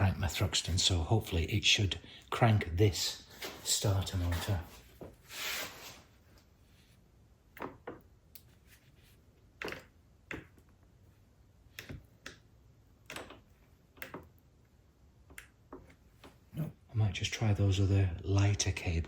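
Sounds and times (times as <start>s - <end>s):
wires and clamps clicking: 11.6s - 16.4s.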